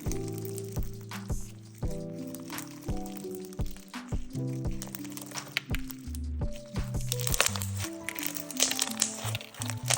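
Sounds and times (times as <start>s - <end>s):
background music: 0.0s - 9.9s
slime crackling and popping: 0.0s - 9.9s.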